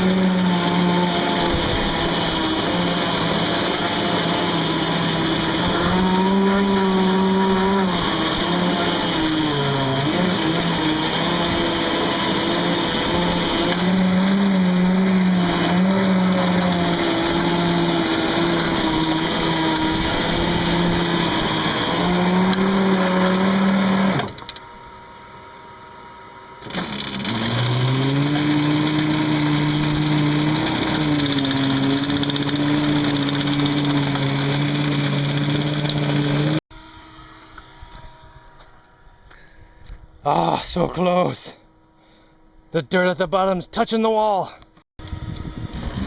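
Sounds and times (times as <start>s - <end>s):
bulldozer diesel engine: 0.0s - 36.6s.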